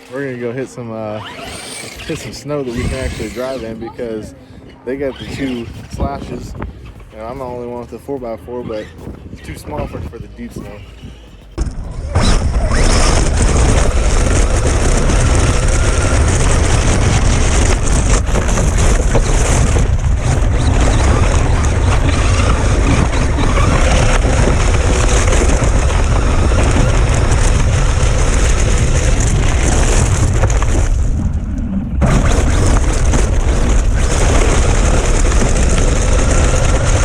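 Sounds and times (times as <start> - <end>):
wind on microphone: 0.0 - 37.0
electric motor whine: 10.8 - 37.0.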